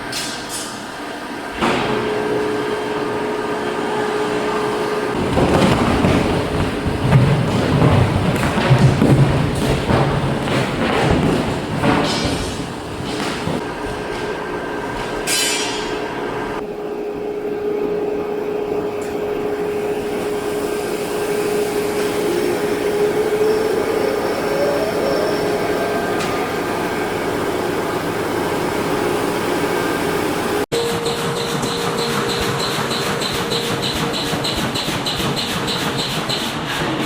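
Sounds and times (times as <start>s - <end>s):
heavy machinery rumble and hum: 0.0s - 37.0s
sharp metal impact: 15.2s - 16.0s
held machine tone: 30.8s - 36.5s.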